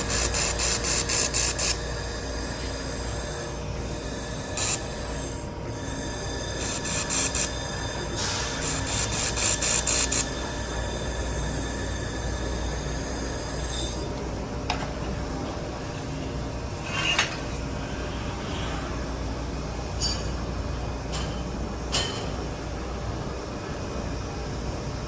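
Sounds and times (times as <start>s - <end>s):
laser welder hum: 0.0s - 14.2s.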